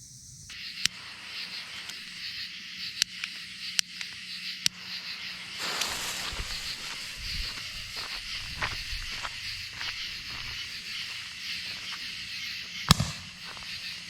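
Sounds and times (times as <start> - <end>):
crickets chirping: 0.0 - 14.0
rustling hiss: 0.0 - 14.0
sharp clicks: 2.9 - 4.8.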